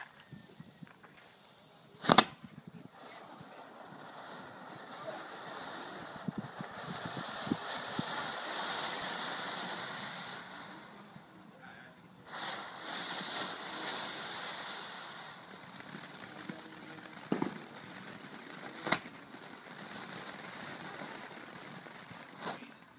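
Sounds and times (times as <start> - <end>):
faint crackles: 0.0 - 22.9
fireworks hissing: 0.0 - 22.9.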